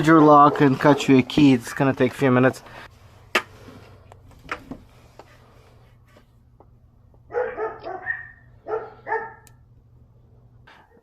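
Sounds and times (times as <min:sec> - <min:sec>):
dog barking: 0:00.3 - 0:01.2, 0:07.3 - 0:09.5.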